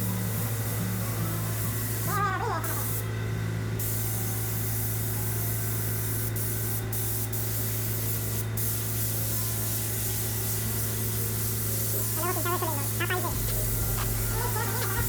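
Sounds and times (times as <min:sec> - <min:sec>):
spray gun hissing: 0:06.3 - 0:15.0
low hum: 0:12.2 - 0:15.0.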